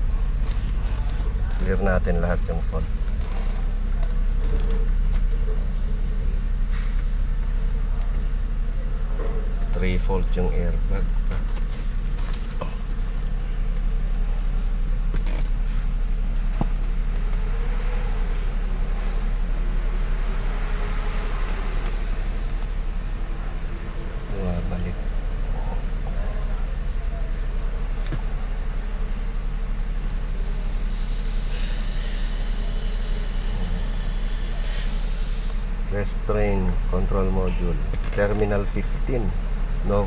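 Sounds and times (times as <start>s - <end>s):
car engine idling: 0.0s - 40.0s
steady hiss: 30.2s - 36.3s.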